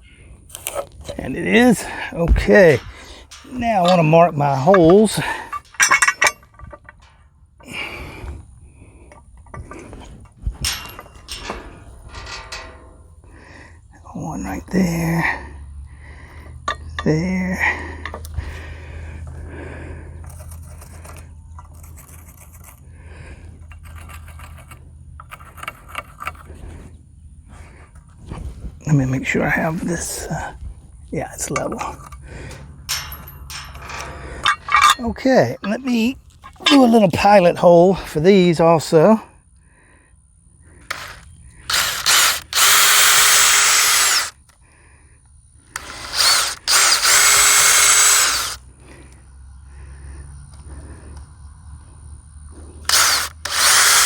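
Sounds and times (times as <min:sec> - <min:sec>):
metal latch hardware clinking: 0:00.5 - 0:07.2, 0:10.6 - 0:13.2, 0:31.4 - 0:37.1
low hum: 0:30.4 - 0:37.2
power drill boring into wood: 0:40.8 - 0:44.4, 0:45.7 - 0:48.6, 0:52.8 - 0:54.0.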